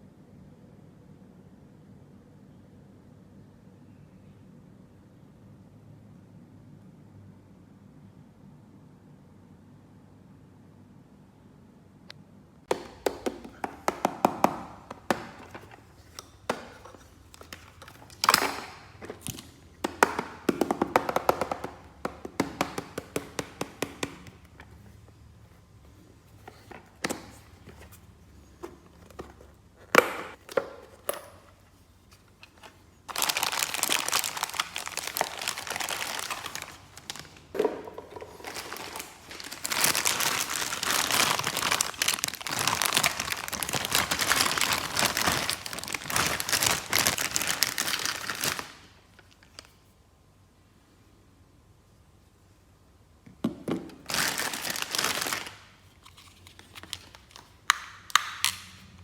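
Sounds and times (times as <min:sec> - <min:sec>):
plastic packaging crinkling: 0:12.7 - 0:25.0, 0:32.0 - 0:49.8, 0:53.9 - 0:58.8.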